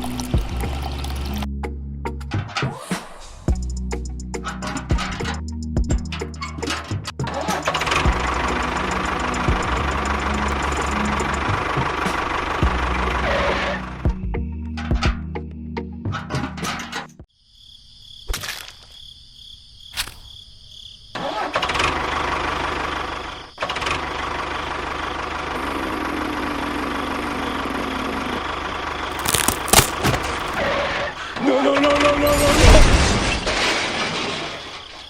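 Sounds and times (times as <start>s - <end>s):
small engine running: 7.5s - 14.0s, 21.6s - 31.1s.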